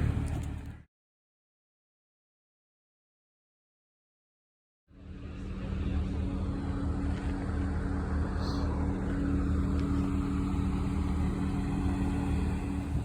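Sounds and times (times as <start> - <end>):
car engine running: 0.0 - 0.8, 5.0 - 13.0.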